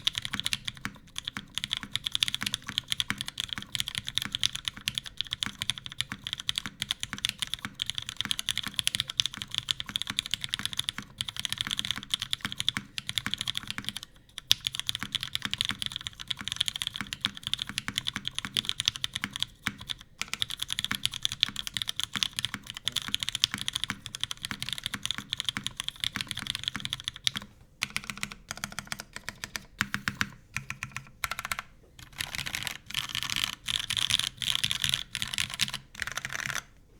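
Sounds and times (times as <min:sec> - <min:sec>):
typing on mechanical keyboard: 0:00.0 - 0:36.7.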